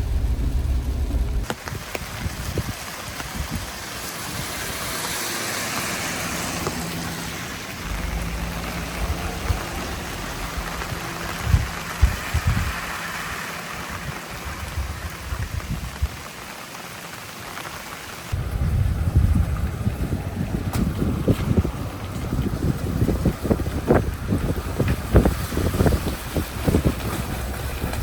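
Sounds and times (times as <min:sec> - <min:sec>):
faint engine hum: 0:00.0 - 0:01.5, 0:06.3 - 0:15.2, 0:18.4 - 0:28.0
low thumps: 0:00.0 - 0:01.5, 0:07.8 - 0:12.9
rain: 0:00.0 - 0:28.0
tyres hissing on wet road: 0:00.0 - 0:28.0.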